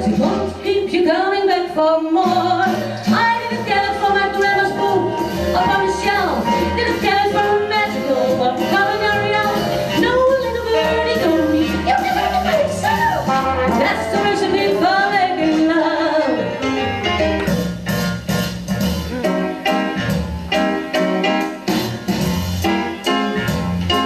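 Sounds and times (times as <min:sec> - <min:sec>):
woman singing: 0:00.0 - 0:16.6
live band playing: 0:00.0 - 0:24.0.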